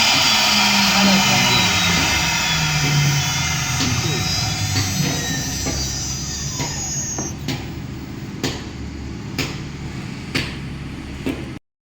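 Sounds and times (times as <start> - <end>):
high machine whine: 0.0 - 8.4
machine low hum: 0.0 - 10.1
sharp machine tick: 0.2 - 7.6.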